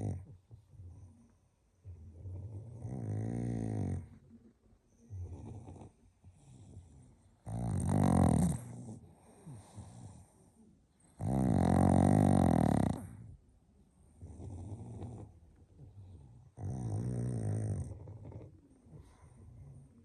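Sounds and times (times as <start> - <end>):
dog snoring: 0.0 - 1.0, 1.8 - 4.3, 5.0 - 13.4, 14.1 - 20.0
dog breathing: 5.1 - 13.4.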